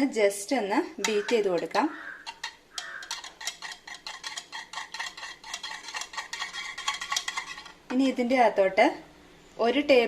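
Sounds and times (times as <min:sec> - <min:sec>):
whisk clicking against bowl: 0:01.0 - 0:07.8.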